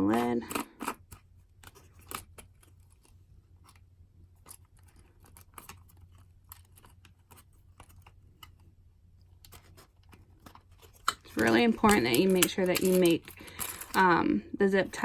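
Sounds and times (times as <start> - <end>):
low steady hum: 0.0 - 15.0
plastic parts clicking: 9.3 - 14.0.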